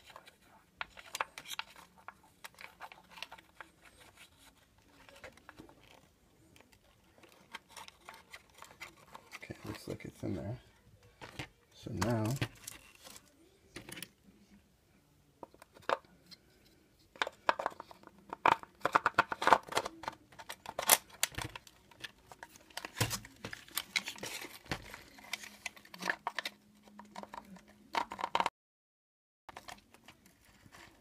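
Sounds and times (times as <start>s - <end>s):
plastic and metal parts clicking: 0.0s - 10.0s, 17.1s - 28.5s, 29.5s - 31.0s.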